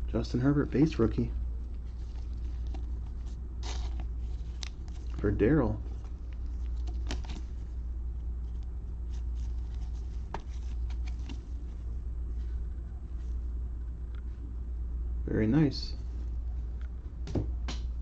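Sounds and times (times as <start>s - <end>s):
low electrical hum: 0.0s - 18.0s
trading cards handled: 1.6s - 13.4s.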